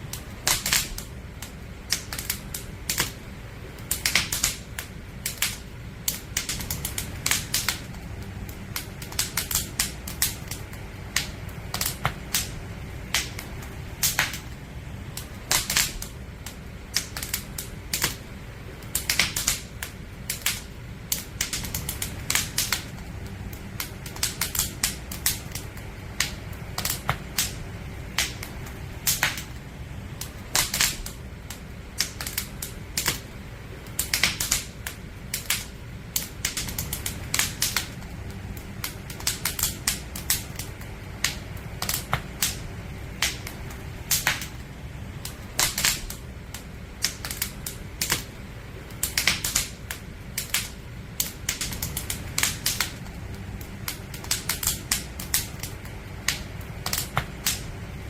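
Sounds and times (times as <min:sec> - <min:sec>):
firewood crackling and popping: 0:00.0 - 0:58.0
low rumble of flames: 0:00.0 - 0:58.0.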